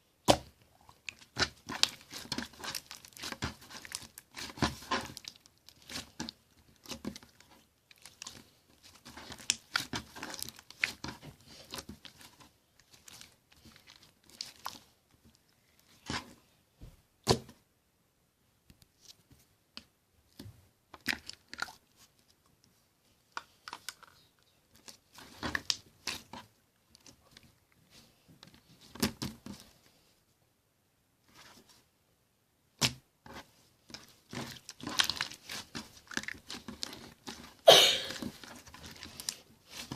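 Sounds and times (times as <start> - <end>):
slime crackling and popping: 0.2 - 16.2, 21.0 - 21.9, 23.4 - 26.4, 33.8 - 39.9.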